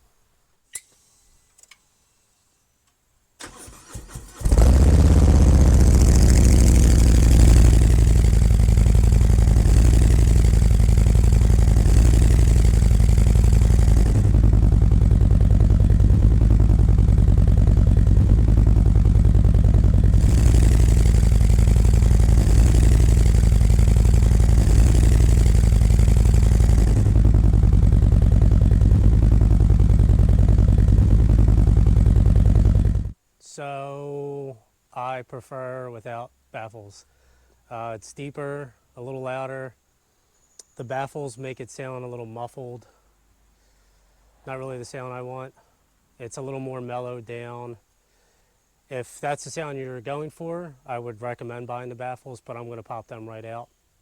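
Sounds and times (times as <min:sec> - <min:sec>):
starter cranking: 0:03.4 - 0:27.9
motorcycle engine idling loudly: 0:04.4 - 0:33.2.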